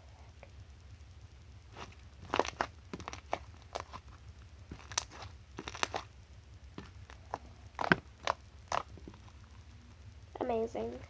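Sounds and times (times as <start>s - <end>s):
slime squished by hand: 1.7s - 6.1s, 6.7s - 9.4s.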